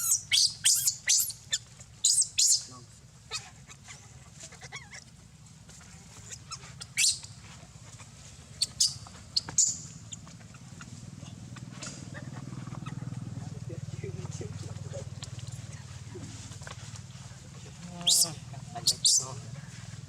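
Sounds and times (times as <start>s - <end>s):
high-pitched animal calls: 0.0s - 2.7s, 17.9s - 19.4s.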